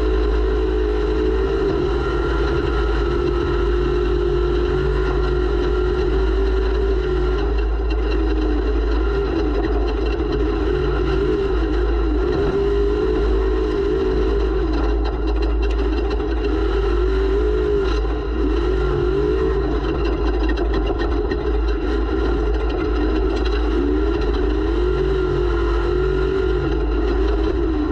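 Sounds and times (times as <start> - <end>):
race vehicle engine revving: 0.0 - 27.9.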